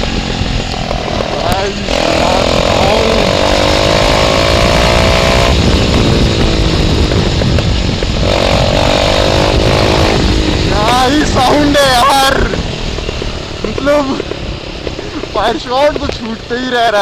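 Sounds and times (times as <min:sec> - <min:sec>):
motorcycle exhaust roaring: 0:00.0 - 0:17.0.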